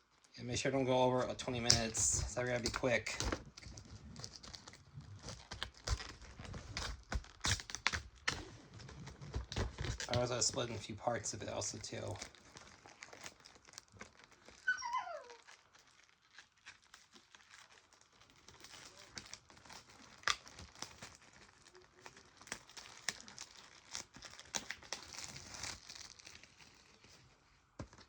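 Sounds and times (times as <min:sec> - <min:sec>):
plastic wrap crinkling: 0:00.0 - 0:28.0.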